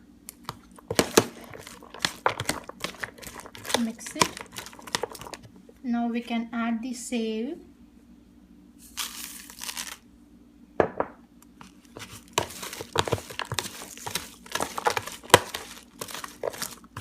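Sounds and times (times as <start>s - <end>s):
crisp snack mixture crackling in a bowl: 0.3s - 5.5s, 8.8s - 10.0s, 11.6s - 17.0s.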